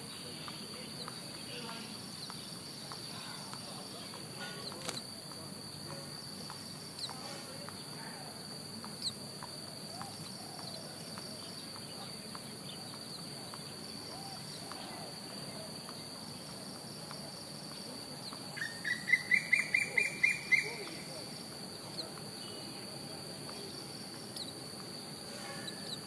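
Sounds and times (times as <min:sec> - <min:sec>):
insects trilling: 0:00.0 - 0:26.0
soft bird chirps: 0:00.0 - 0:26.0
rapid sharp bird chirps: 0:18.2 - 0:21.0, 0:25.5 - 0:26.0.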